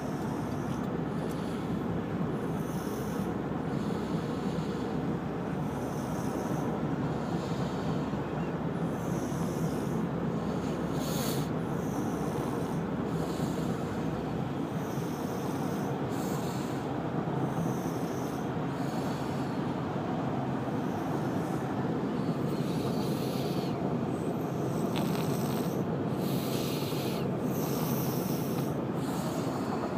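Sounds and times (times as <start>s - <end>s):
steady low rumble: 0.0s - 29.9s
person snoring: 24.8s - 29.9s.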